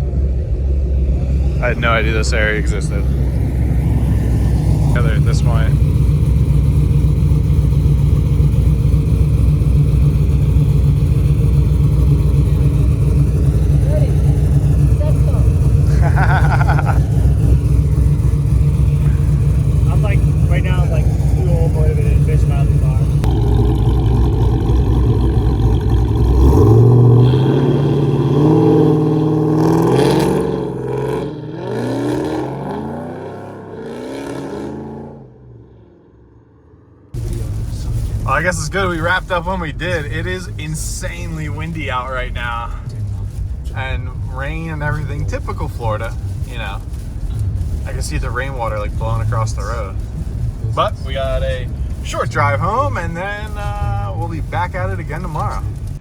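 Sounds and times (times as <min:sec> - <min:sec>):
cars passing: 0:00.0 - 0:56.0
road noise: 0:00.0 - 0:56.0
vehicle engine rumble: 0:00.0 - 0:56.0.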